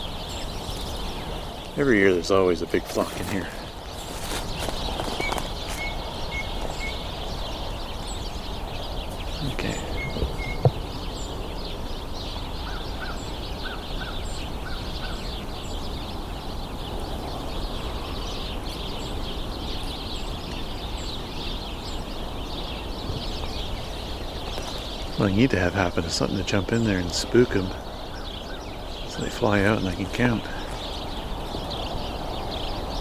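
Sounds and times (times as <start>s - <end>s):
sparrows chattering: 0.0s - 33.0s
short bird notes: 4.0s - 15.2s.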